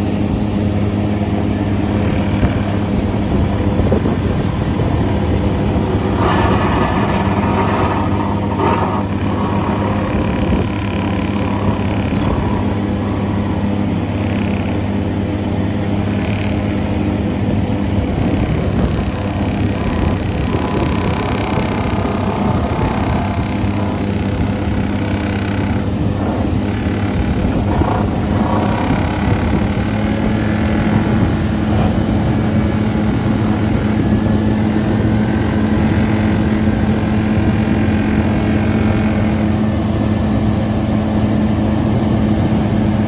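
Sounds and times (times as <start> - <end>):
excavator diesel drone: 0.0 - 43.0
rapid vibration: 0.7 - 41.1
metallic squeals: 3.3 - 15.4, 18.2 - 30.8.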